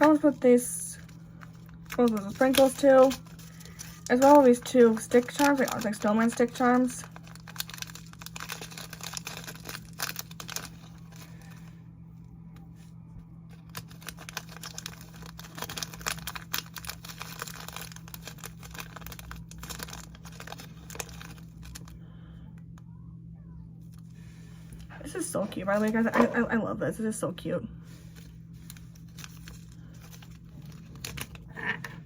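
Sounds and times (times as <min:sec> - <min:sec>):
plastic packets crinkling: 0:00.0 - 0:11.7, 0:13.5 - 0:22.0, 0:28.1 - 0:32.0.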